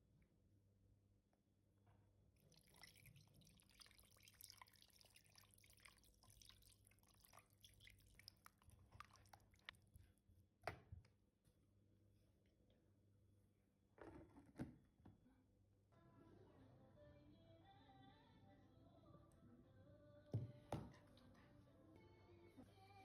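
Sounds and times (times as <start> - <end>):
dripping: 2.4 - 9.9
faint wet crackling: 2.5 - 9.9.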